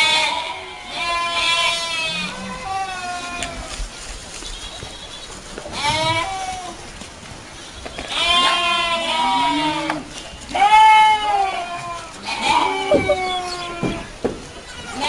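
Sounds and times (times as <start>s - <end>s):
animal wavering cries: 12.4s - 13.8s.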